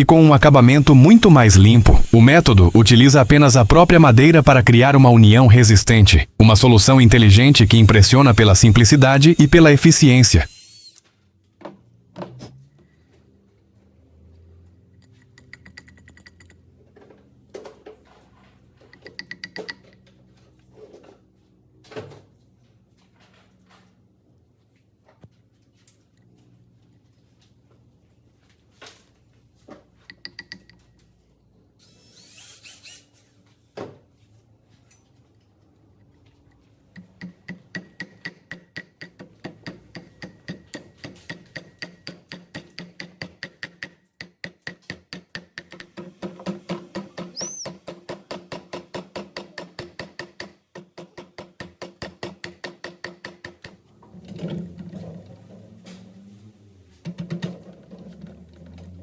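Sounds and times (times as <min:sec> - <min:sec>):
rapid regular knocking: 0:37.0 - 0:53.8.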